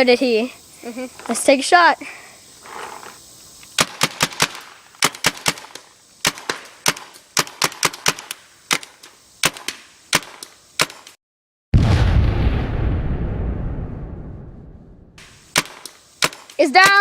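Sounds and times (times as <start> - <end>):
paintball marker firing pops: 3.6 - 11.1, 15.2 - 17.0.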